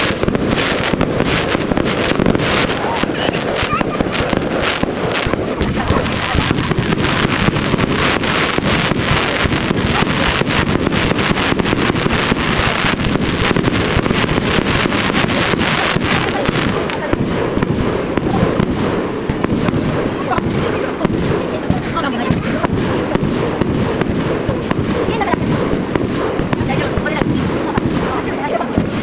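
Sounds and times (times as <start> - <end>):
fireworks bursting and crackling: 0.0 - 29.0.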